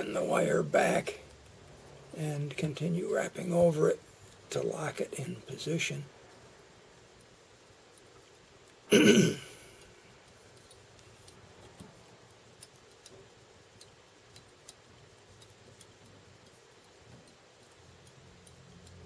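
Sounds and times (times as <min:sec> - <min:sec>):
person clearing throat: 0:08.9 - 0:09.7
faint thread ticks: 0:09.8 - 0:19.0.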